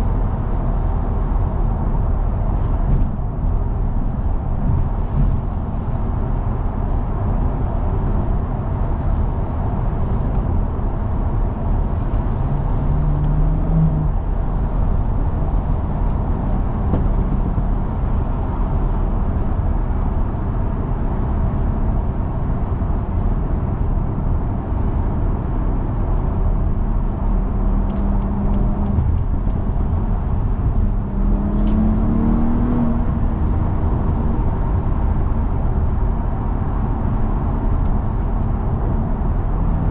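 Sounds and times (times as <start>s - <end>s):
road and tyre noise: 0.0s - 39.9s
car engine revving: 30.2s - 39.9s.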